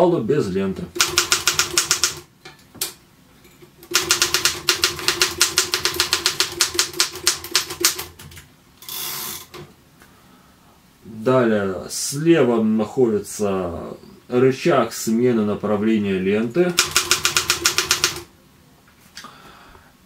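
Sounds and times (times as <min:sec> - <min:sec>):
typewriter keys striking: 0:01.0 - 0:02.3, 0:03.8 - 0:08.4, 0:16.7 - 0:18.3.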